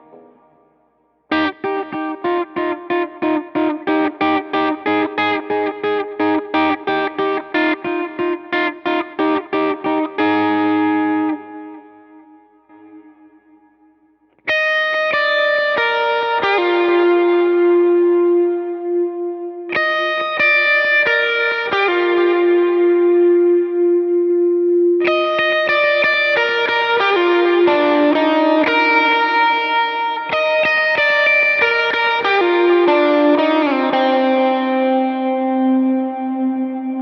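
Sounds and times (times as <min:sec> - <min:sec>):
electric guitar with drive: 0:14.5 - 0:37.0.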